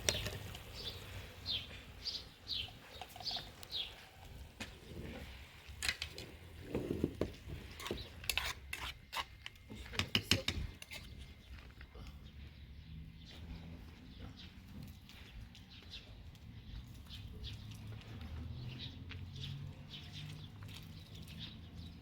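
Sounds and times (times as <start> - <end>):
bird chirping: 0.0 - 4.8, 10.7 - 22.0.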